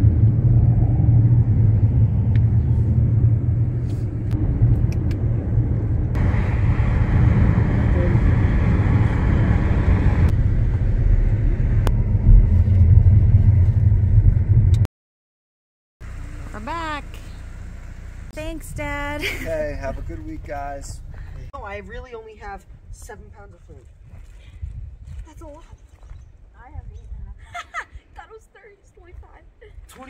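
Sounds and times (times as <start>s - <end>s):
car engine and tyre rumble: 0.0s - 14.9s, 16.0s - 22.0s.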